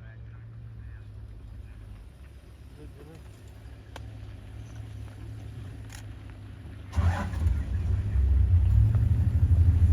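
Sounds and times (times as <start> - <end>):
engine running with low rumble: 0.0 - 9.9
vehicle engine starting: 6.8 - 9.9.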